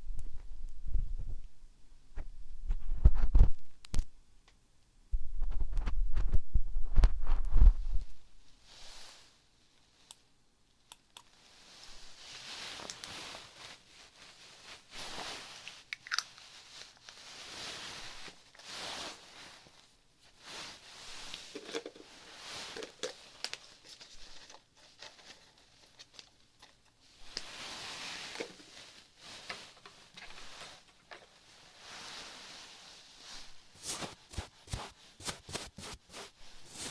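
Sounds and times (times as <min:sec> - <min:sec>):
scratching and rustling: 0:20.4 - 0:36.9.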